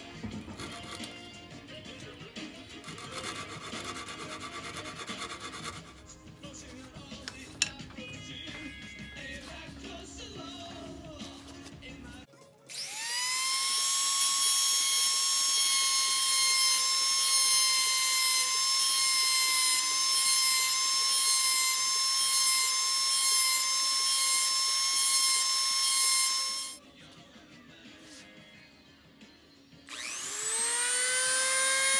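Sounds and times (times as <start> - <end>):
rotary tool motor whining: 0.4 - 1.3, 2.8 - 6.0, 12.7 - 26.8, 29.9 - 31.9.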